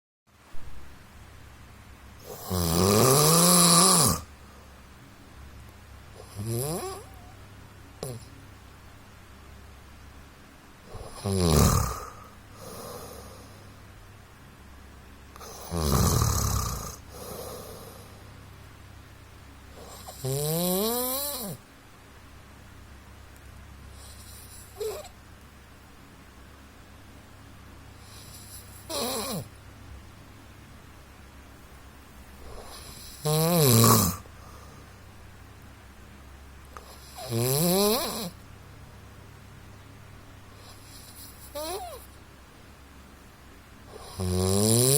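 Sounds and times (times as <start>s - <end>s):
man snoring: 2.2s - 4.3s, 6.2s - 7.3s, 8.0s - 8.3s, 10.9s - 13.6s, 15.4s - 18.2s, 19.8s - 21.6s, 28.2s - 29.5s, 32.4s - 34.7s, 36.8s - 38.4s, 40.7s - 42.0s, 43.9s - 44.9s
soft breathing: 12.0s - 13.9s, 17.0s - 18.5s, 34.2s - 35.2s.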